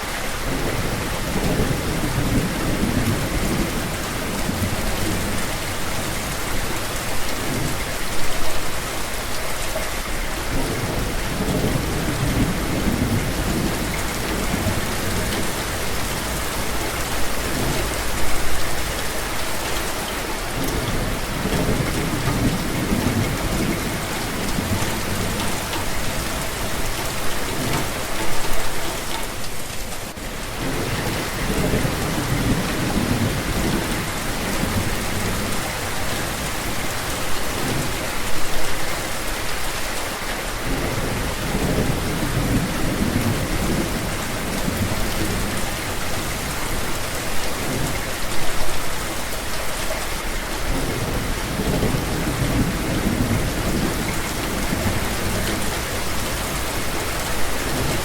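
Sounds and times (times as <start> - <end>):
steady rain: 0.0 - 58.0
thunder rumbling: 10.5 - 19.4, 20.4 - 28.8, 30.3 - 38.4, 40.6 - 48.1, 50.6 - 58.0.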